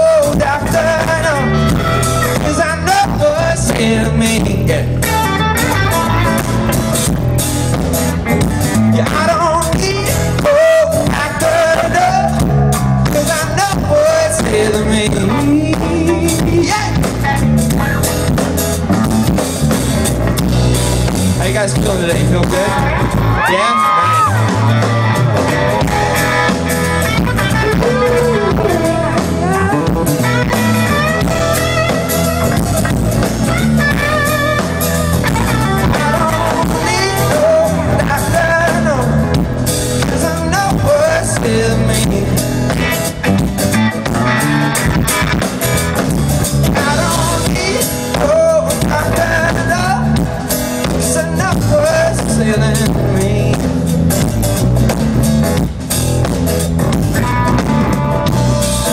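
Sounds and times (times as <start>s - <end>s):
person singing: 0.0s - 6.7s, 8.7s - 17.2s, 27.2s - 32.5s, 33.7s - 43.0s, 46.6s - 53.8s
amplified electric guitar: 0.0s - 58.9s
drum kit: 0.0s - 58.9s.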